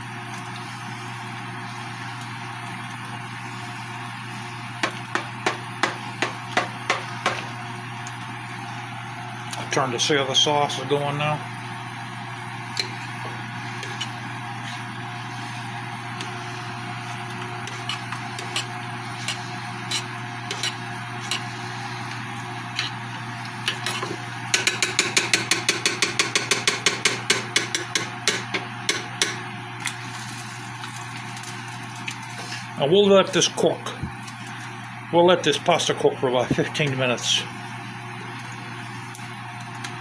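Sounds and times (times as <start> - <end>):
steady low hum: 2.9 - 25.3.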